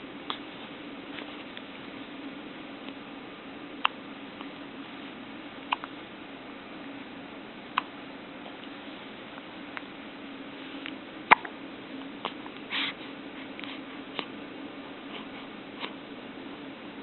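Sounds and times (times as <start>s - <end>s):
steady low hum: 0.0s - 17.0s
baby hiccuping: 11.3s - 11.5s.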